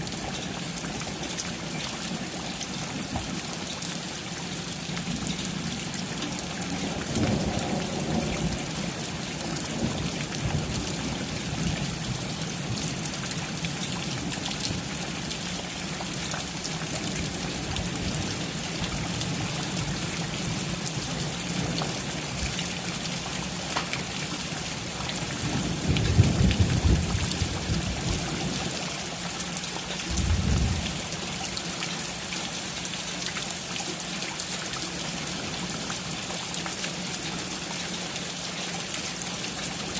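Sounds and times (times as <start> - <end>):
steady rain: 0.0 - 39.9
distant thunder rumbling: 25.4 - 28.6.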